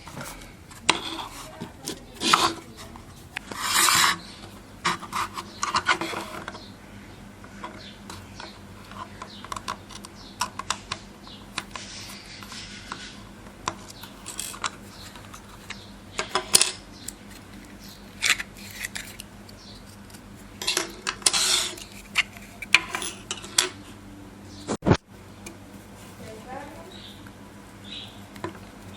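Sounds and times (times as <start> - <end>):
scrapes of small hard parts: 0.0 - 6.7, 11.6 - 23.8
clicks of small parts handled: 13.7 - 23.8.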